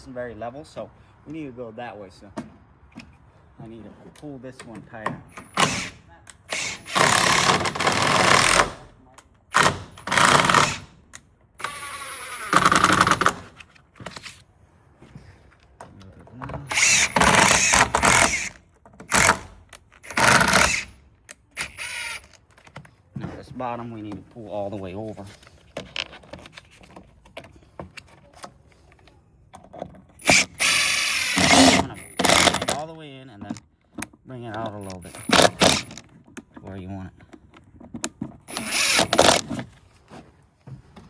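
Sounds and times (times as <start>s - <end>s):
power driver driving a screw: 5.3s - 8.8s, 9.5s - 10.9s, 11.6s - 13.5s, 16.7s - 21.0s, 21.6s - 22.4s, 30.2s - 32.8s, 34.6s - 36.1s, 38.4s - 39.6s.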